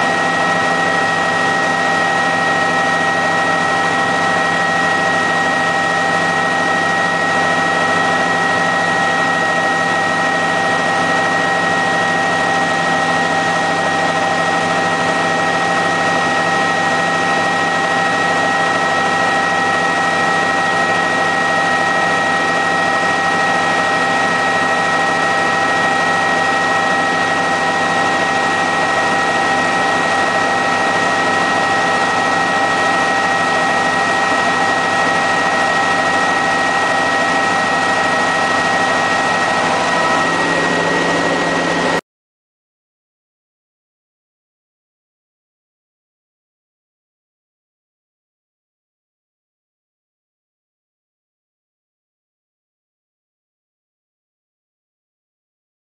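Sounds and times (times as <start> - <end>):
helicopter engine and rotors: 0.0 - 42.0
whining tones: 24.1 - 42.0.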